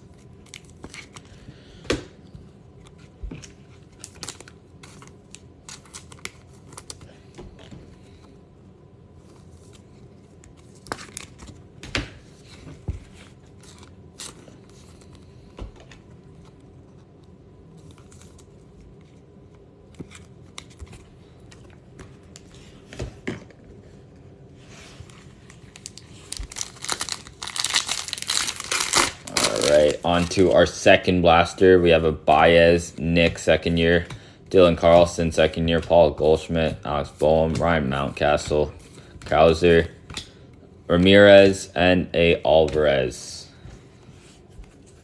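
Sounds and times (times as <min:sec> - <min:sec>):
wrapper crinkling and tearing: 0:25.5 - 0:30.8.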